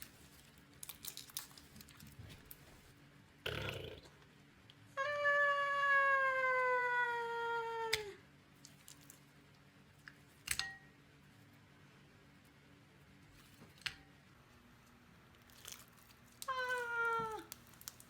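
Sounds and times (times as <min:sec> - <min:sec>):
cat meowing: 0:05.0 - 0:08.1, 0:16.4 - 0:17.5.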